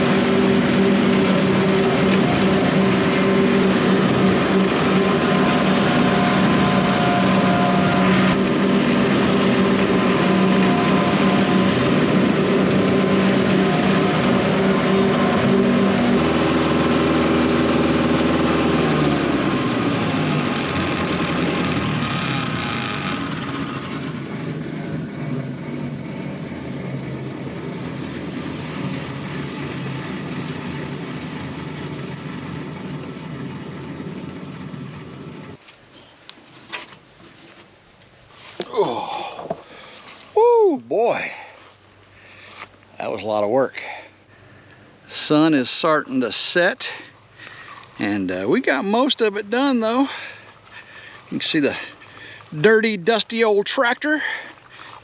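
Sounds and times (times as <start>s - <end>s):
rotary cutter: 0.0s - 35.6s
tractor engine running steadily: 0.0s - 55.0s.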